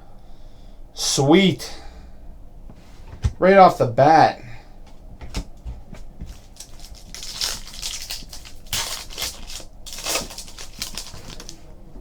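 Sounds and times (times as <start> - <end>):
foil wrapper crinkling and tearing: 6.3 - 11.7.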